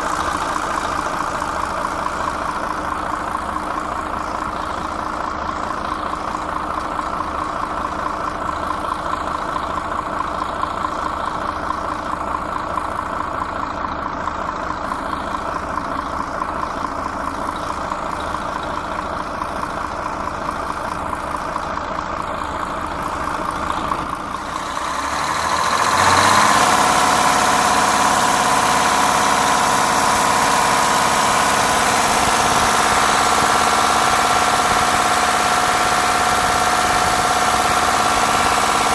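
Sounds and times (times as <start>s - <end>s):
diesel engine idling: 0.0s - 38.9s.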